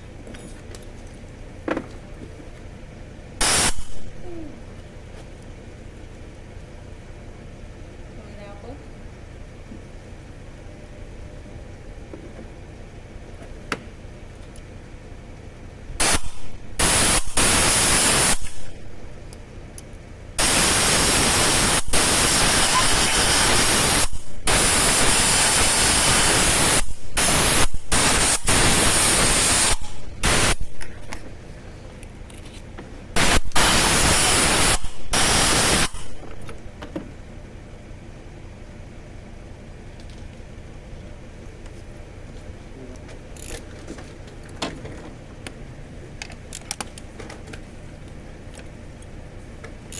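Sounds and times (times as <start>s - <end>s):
pressurised gas hissing: 3.4s - 4.3s, 16.0s - 19.2s, 20.4s - 31.5s, 33.2s - 36.6s.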